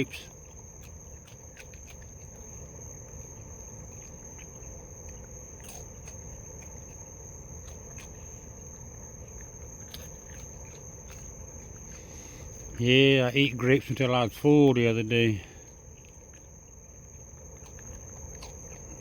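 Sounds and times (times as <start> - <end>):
crickets chirring: 0.0 - 19.0.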